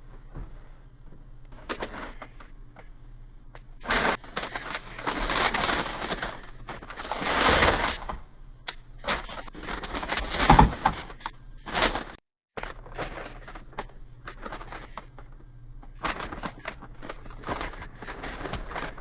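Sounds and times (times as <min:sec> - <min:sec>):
plastic packaging rustling: 0:03.8 - 0:08.2, 0:08.8 - 0:19.0.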